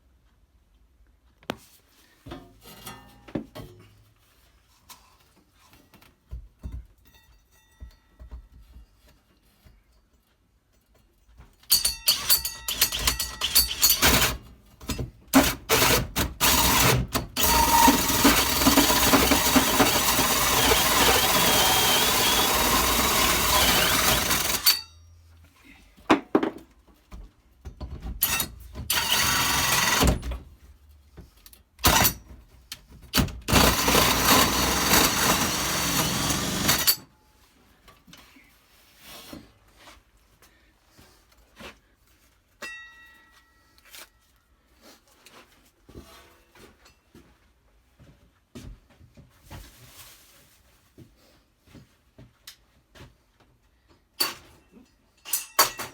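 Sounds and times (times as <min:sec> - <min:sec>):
power drill running: 0:12.1 - 0:14.4, 0:15.4 - 0:24.8, 0:28.9 - 0:30.2, 0:33.4 - 0:37.0.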